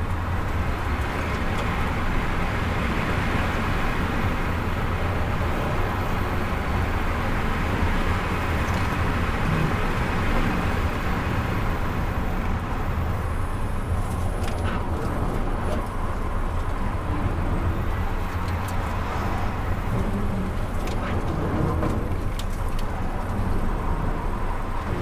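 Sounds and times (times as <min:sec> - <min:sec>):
tyre road and wind rumble: 0:00.0 - 0:25.0.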